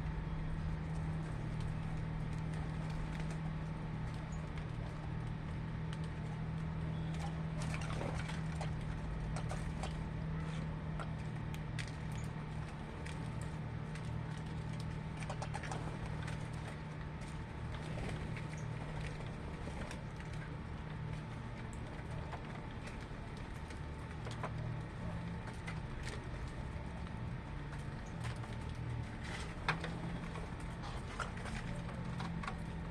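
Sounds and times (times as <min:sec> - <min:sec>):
steady low hum: 0:00.0 - 0:32.9
birds chirping and clicking: 0:12.0 - 0:12.4, 0:18.3 - 0:19.2.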